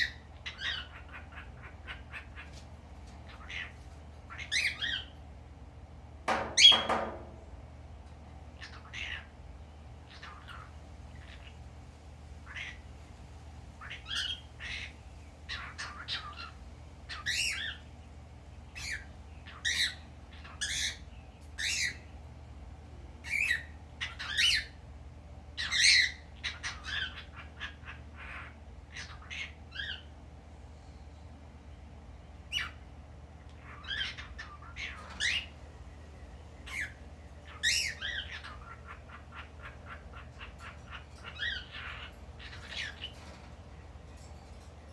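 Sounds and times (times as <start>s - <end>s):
cockatiel squawking and chirping: 0.0s - 2.6s, 3.3s - 5.1s, 6.3s - 7.2s, 10.1s - 11.5s, 12.5s - 12.8s, 15.5s - 17.8s, 23.3s - 24.8s, 25.6s - 30.0s, 33.6s - 35.5s, 36.7s - 43.2s.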